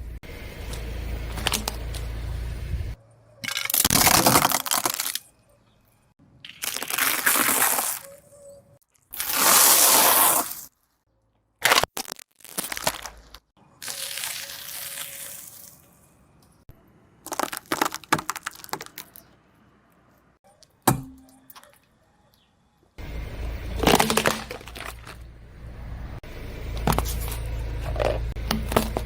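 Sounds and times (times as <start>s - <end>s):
objects crunching under car tyre: 0.5s - 5.4s, 6.4s - 8.3s, 8.9s - 10.8s, 11.6s - 15.9s, 17.2s - 19.4s, 23.0s - 25.9s, 26.5s - 29.0s.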